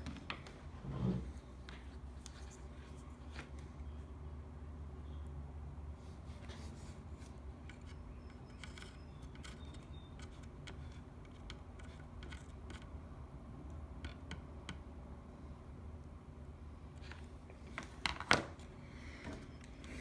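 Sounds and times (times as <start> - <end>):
small tools clicking and tapping: 7.6 - 12.9.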